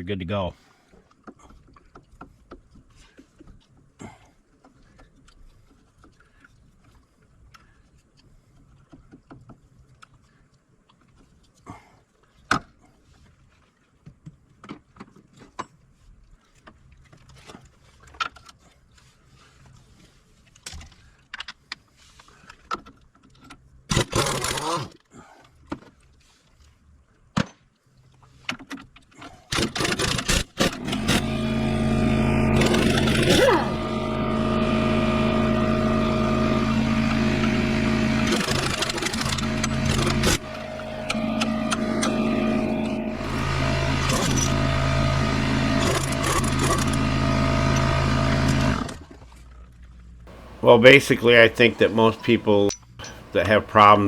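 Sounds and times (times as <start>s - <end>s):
air impact wrench bursts: 30.6s - 48.7s, 50.3s - 54.0s.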